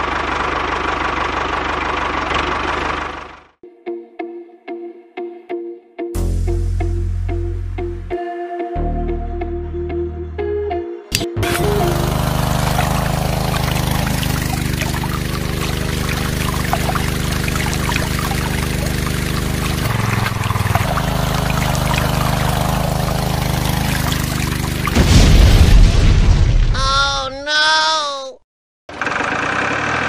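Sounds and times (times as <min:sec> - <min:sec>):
small motor running: 0:11.4 - 0:25.0
water pouring and splashing: 0:11.5 - 0:26.6.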